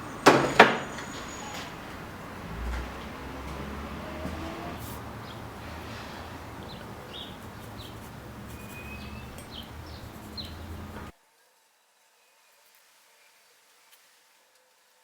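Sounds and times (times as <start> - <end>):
high bird chirps: 0.0 - 11.1.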